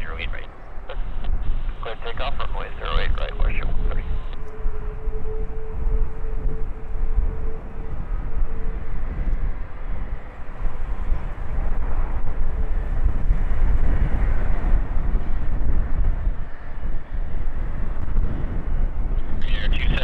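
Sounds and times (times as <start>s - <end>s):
jet engines rumbling: 0.0s - 20.0s
wind buffeting microphone: 0.0s - 20.0s.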